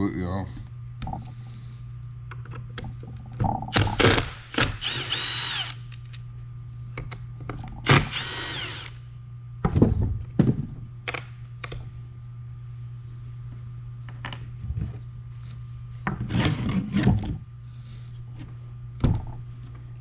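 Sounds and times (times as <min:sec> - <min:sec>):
cordless drill motor whine: 0:03.7 - 0:05.9, 0:07.8 - 0:09.1.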